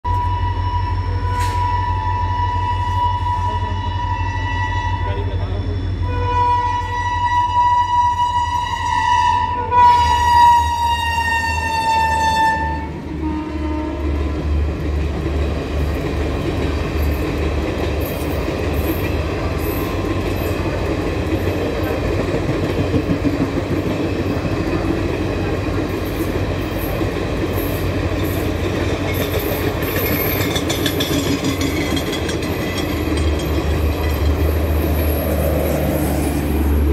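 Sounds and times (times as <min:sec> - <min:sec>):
train rumbling on rails: 0:00.0 - 0:36.9
train horn: 0:00.1 - 0:14.4.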